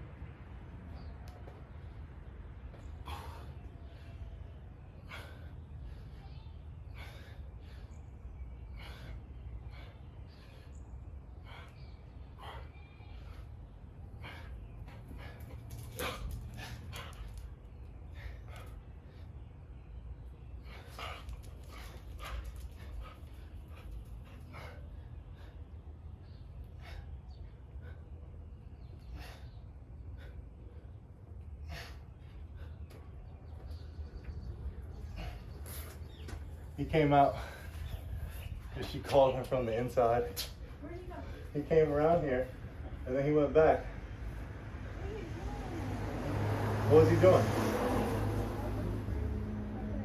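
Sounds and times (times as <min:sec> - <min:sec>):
low rumble of street noise: 0:00.0 - 0:50.0
man breathing sharply: 0:02.9 - 0:15.5, 0:26.6 - 0:28.4, 0:29.0 - 0:33.0.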